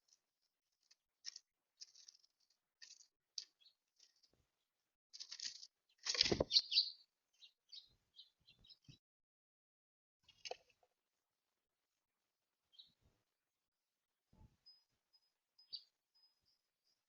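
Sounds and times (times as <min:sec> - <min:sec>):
songbirds chirping: 0:00.1 - 0:09.0, 0:11.9 - 0:13.4, 0:14.3 - 0:17.0.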